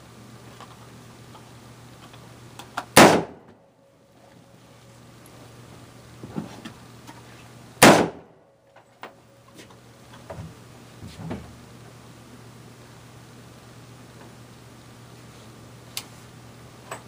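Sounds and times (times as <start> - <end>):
rifle shot: 3.0 - 3.5, 7.8 - 8.4.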